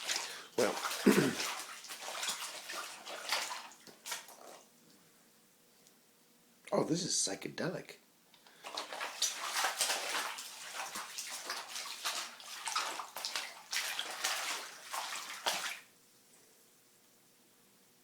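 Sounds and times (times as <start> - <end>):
water sloshing and splashing: 0.0 - 4.7, 8.5 - 15.9.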